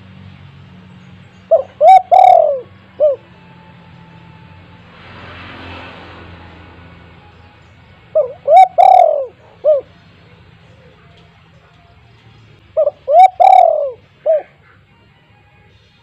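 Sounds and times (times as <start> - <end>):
dove cooing: 1.5 - 3.3, 8.1 - 11.2, 12.7 - 14.9.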